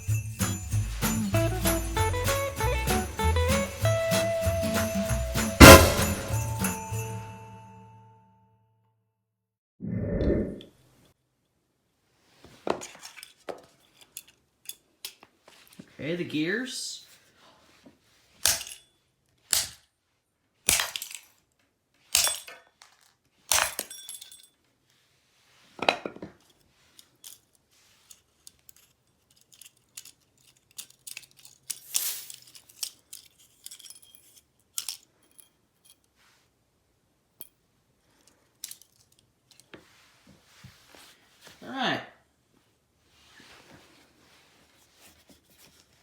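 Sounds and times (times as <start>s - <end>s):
broken pieces clinking and rattling: 0.0s - 7.2s, 12.8s - 15.2s, 18.4s - 18.9s, 20.7s - 21.5s, 22.1s - 24.7s, 26.4s - 36.1s, 38.2s - 39.7s
sharp blows smashing a timer: 5.6s - 6.8s.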